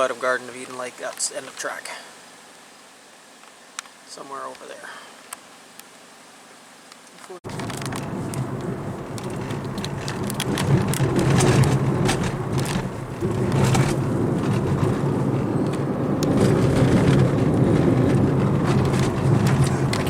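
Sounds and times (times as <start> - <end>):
car engine and tyres rumbling: 7.4 - 20.0
knocks and rattles from bumps: 7.5 - 20.0.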